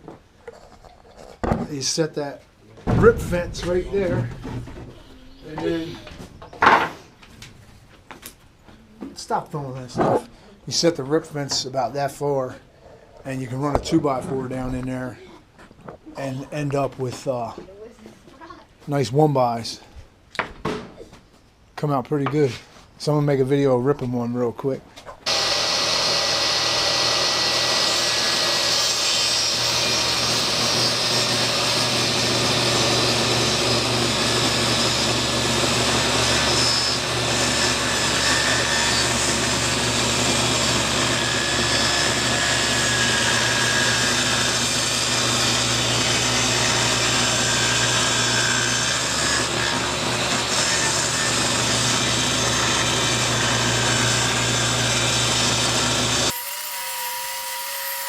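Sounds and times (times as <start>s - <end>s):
table saw ripping wood: 25.3s - 58.0s.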